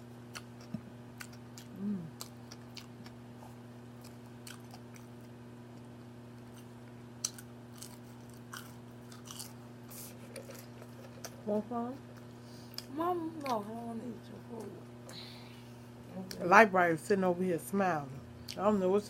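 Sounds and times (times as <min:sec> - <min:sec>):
steady low hum: 0:00.0 - 0:19.0
person chewing food: 0:00.3 - 0:11.4.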